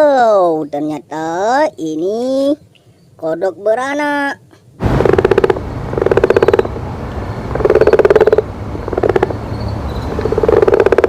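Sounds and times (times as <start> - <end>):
frog croaking: 4.9 - 6.8, 7.4 - 11.0.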